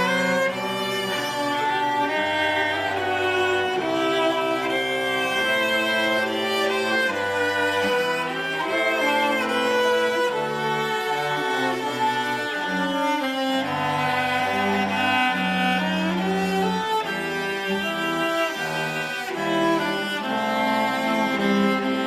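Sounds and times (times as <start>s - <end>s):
low bowed bass line: 0.0s - 22.0s
string orchestra playing slow piece: 0.0s - 22.0s.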